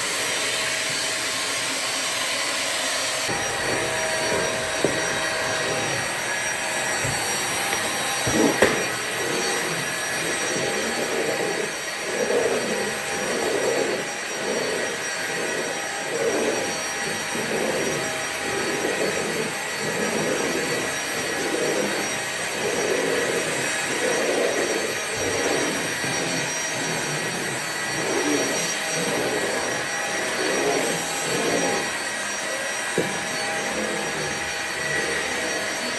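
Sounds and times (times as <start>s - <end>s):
vacuum cleaner running: 0.0s - 35.9s.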